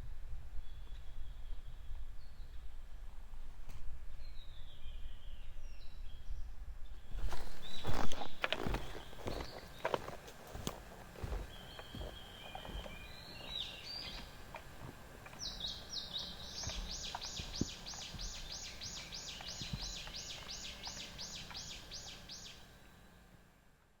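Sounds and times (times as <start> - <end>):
bird singing: 4.2 - 23.3.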